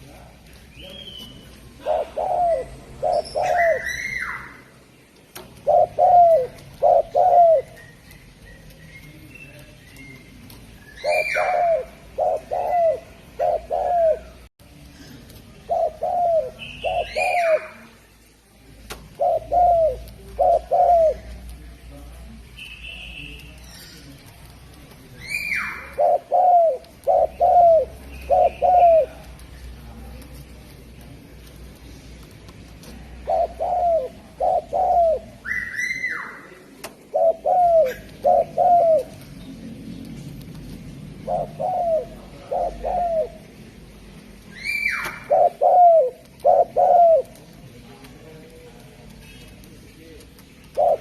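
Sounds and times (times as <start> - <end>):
dove cooing: 1.5 - 4.7, 5.4 - 8.1, 11.0 - 14.4, 15.5 - 18.0, 19.1 - 21.5, 25.3 - 29.4, 33.1 - 39.3, 40.1 - 43.6, 44.6 - 47.6, 50.6 - 51.0.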